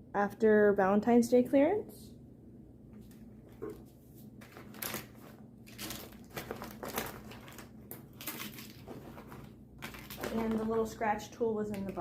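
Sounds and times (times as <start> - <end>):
packaging crinkling and rustling: 3.0 - 11.0.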